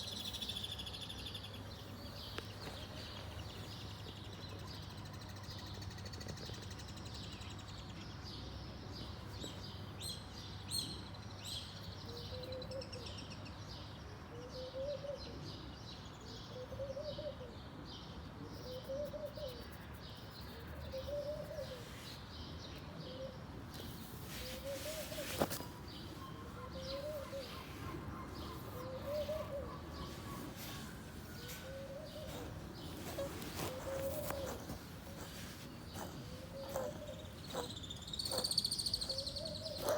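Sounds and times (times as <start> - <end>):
steady background hum: 19.8 - 39.9
birds chirping: 20.4 - 39.9
low rising and falling bird call: 24.3 - 39.9.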